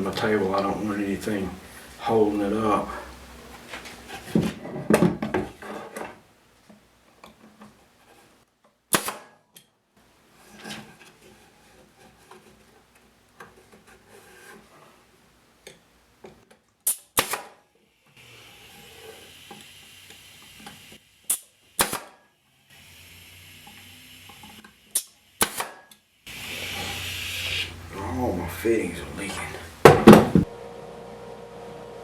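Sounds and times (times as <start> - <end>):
pneumatic stapler firing: 8.9 - 9.4, 16.8 - 17.6, 20.6 - 22.2, 24.3 - 26.9
compressed air hissing: 26.3 - 30.4.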